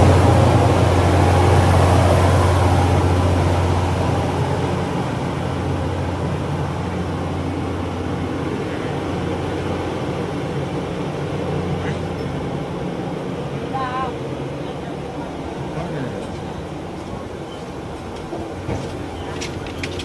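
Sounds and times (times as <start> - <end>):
train droning: 0.0 - 20.0.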